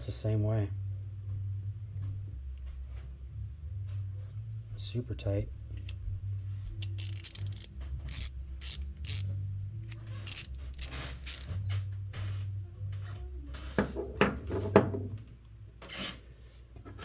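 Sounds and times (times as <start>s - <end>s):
ratchet pawl clicking: 6.7s - 9.3s, 9.9s - 11.6s.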